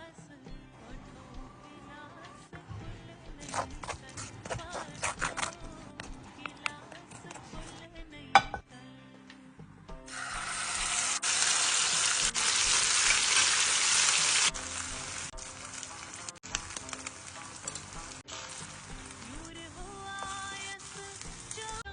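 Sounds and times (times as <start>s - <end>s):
food sizzling in a pan: 10.1s - 21.9s
stirring clicks: 16.2s - 18.1s.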